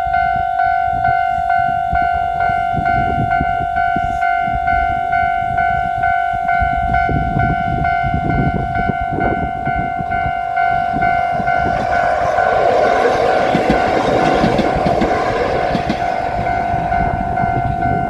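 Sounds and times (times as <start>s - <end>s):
train rumble and wheel noise: 0.0s - 18.0s.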